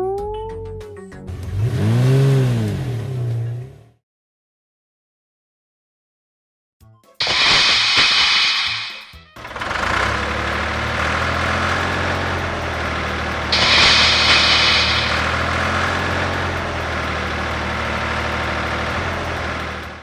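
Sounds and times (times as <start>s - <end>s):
loud hiss: 7.2s - 9.2s, 13.5s - 15.5s
vehicle engine idling: 9.4s - 20.0s.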